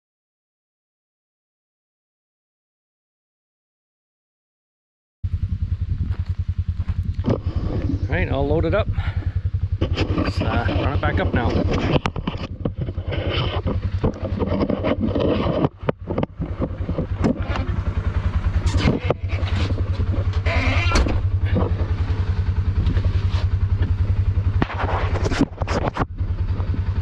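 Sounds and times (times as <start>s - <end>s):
utility vehicle engine running: 5.2s - 27.0s
vehicle knocks and rattles: 9.7s - 27.0s.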